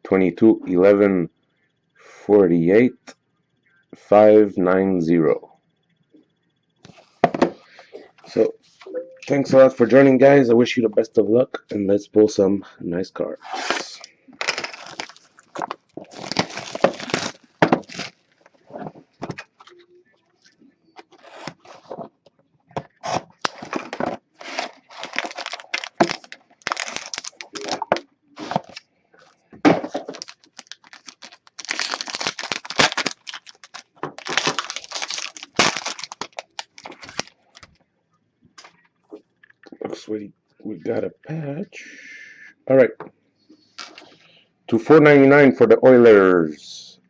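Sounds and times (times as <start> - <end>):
packaging tearing and crinkling: 13.7 - 18.5, 23.0 - 28.8, 29.9 - 37.7.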